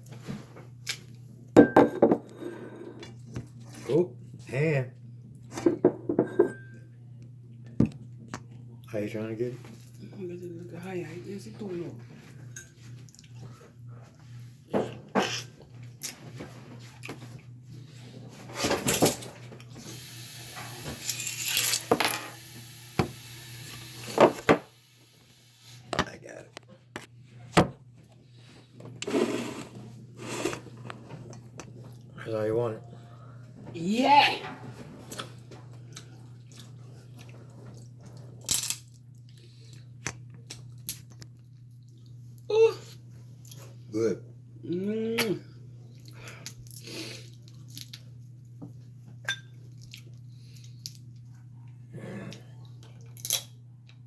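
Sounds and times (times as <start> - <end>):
faint low hum: 0.0 - 19.9, 29.6 - 54.0
food being chewed: 12.6 - 14.4, 35.1 - 42.5, 45.9 - 48.8, 49.5 - 54.0.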